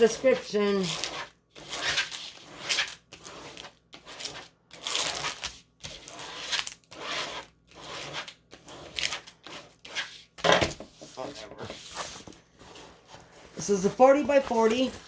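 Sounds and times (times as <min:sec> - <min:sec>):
packaging rustling and crinkling: 0:11.8 - 0:15.0.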